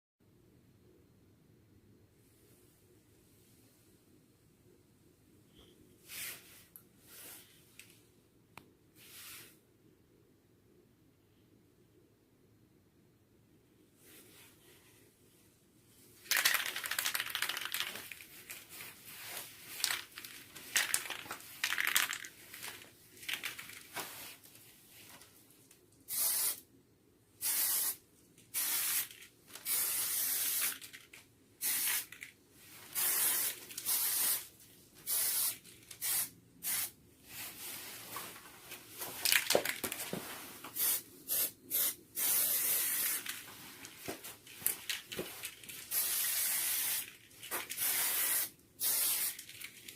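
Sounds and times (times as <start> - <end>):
aerosol spray can hissing: 27.4 - 28.0, 31.6 - 32.1, 33.0 - 34.5, 35.1 - 37.0, 40.8 - 43.3, 45.9 - 47.1, 47.8 - 49.4.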